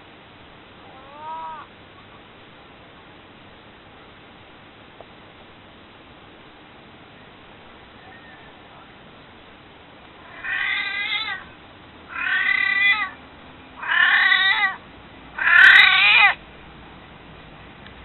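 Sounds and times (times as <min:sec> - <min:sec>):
cat meowing: 0:00.8 - 0:01.7, 0:10.2 - 0:11.5, 0:12.1 - 0:13.2, 0:13.8 - 0:14.8, 0:15.4 - 0:16.4.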